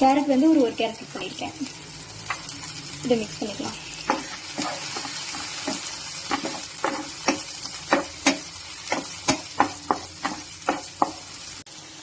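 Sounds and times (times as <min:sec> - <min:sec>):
vegetables sizzling in oil: 0:00.0 - 0:12.0
spatula scraping a pan: 0:03.5 - 0:11.3.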